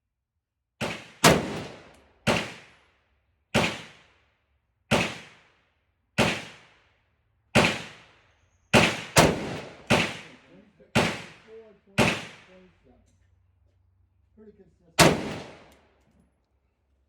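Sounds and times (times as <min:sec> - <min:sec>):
rifle gunshots with echo: 0:00.8 - 0:02.9, 0:03.5 - 0:04.2, 0:04.9 - 0:05.6, 0:06.2 - 0:06.8, 0:07.5 - 0:12.7, 0:15.0 - 0:15.8.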